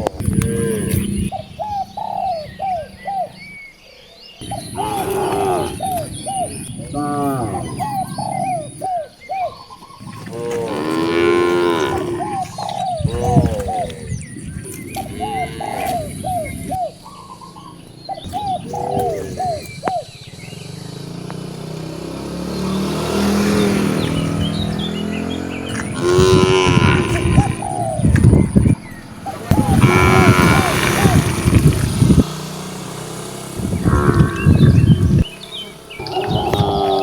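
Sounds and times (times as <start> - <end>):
cattle mooing: 4.4 - 8.5, 10.0 - 16.8, 18.2 - 19.7, 25.5 - 28.2, 29.2 - 32.3, 33.6 - 37.0
bird calling short notes: 23.4 - 32.3.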